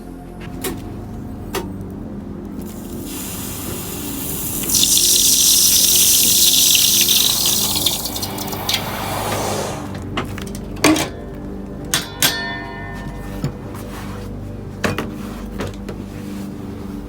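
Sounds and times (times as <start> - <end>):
hot metal quenched hissing in water: 2.7 - 10.0.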